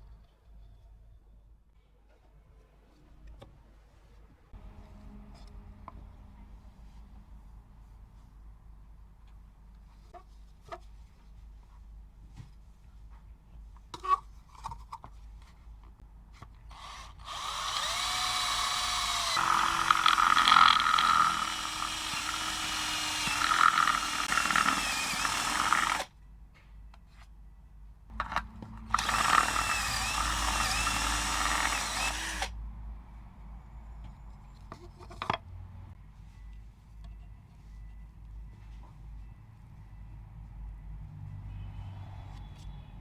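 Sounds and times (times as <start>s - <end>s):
electric saw whining: 16.8s - 26.1s, 28.1s - 32.5s.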